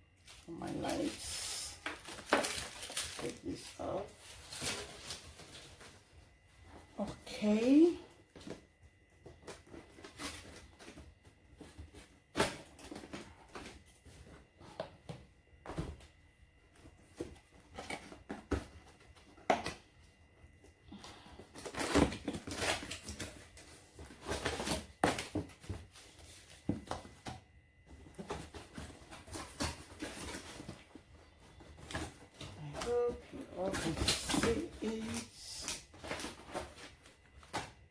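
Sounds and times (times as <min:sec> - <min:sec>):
packaging rustling: 0:00.1 - 0:06.5, 0:27.9 - 0:37.9.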